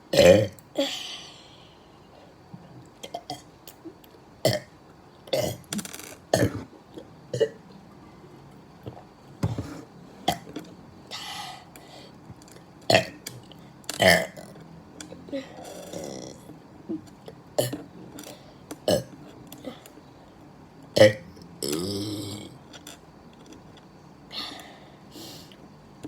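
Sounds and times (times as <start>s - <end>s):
man burping: 0.1s - 0.6s, 14.0s - 14.5s.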